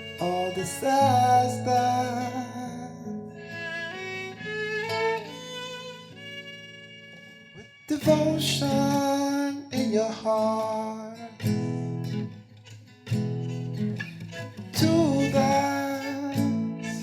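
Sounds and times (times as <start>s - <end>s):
strummed guitar chords: 0.0s - 17.0s.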